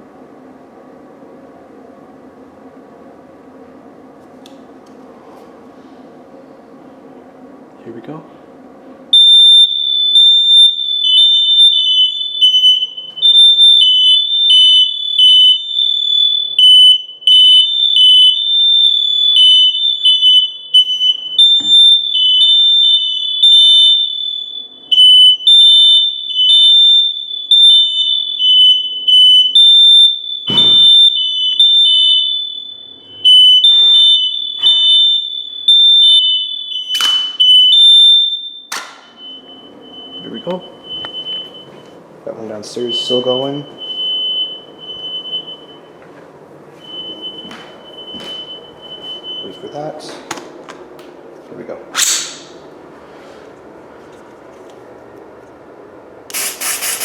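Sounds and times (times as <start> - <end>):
smoke alarms beeping: 9.1 - 50.4.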